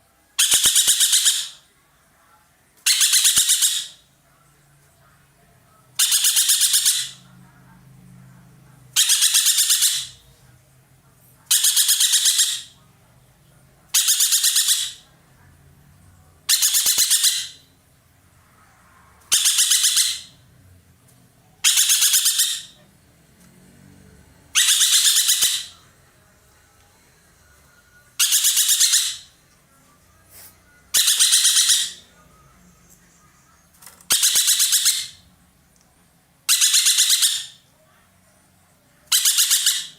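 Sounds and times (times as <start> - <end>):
bird rattling calls: 34.1 - 35.2.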